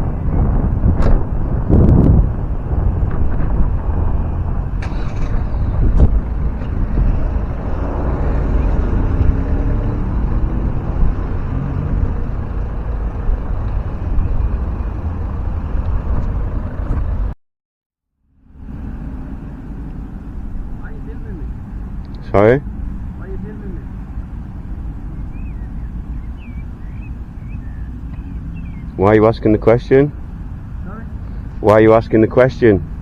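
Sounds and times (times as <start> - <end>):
road traffic: 0.0 - 17.4, 18.1 - 33.0
wind on microphone: 0.0 - 17.4.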